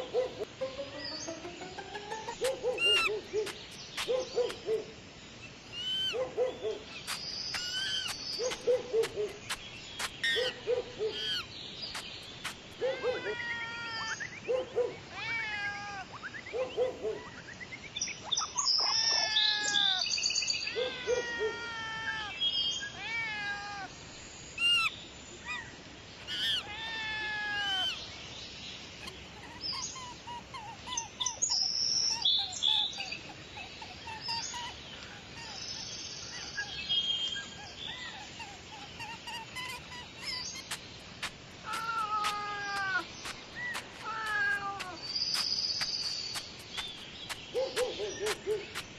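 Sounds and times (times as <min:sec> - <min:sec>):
high bird chirps: 0:00.7 - 0:04.8, 0:05.7 - 0:13.1, 0:29.0 - 0:48.9
bird hooting: 0:01.8 - 0:04.9
bird falling calls: 0:02.0 - 0:04.8, 0:05.8 - 0:14.1, 0:37.4 - 0:48.9.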